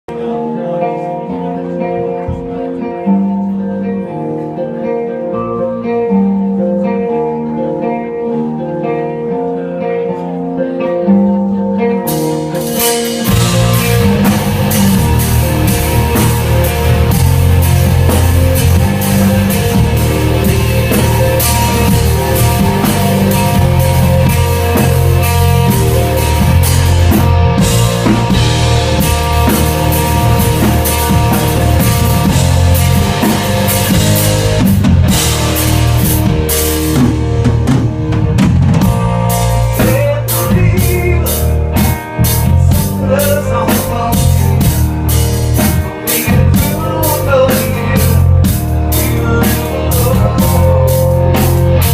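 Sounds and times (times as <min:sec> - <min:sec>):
bass guitar: 0:00.0 - 0:51.9
electric guitar: 0:00.1 - 0:51.9
drum kit hits: 0:12.6 - 0:51.9.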